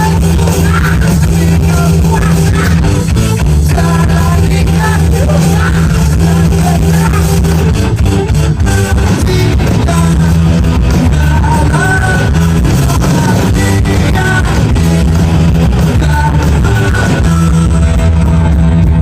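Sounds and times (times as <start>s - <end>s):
electric guitar: 0.0s - 19.0s
rock band playing live: 0.0s - 19.0s.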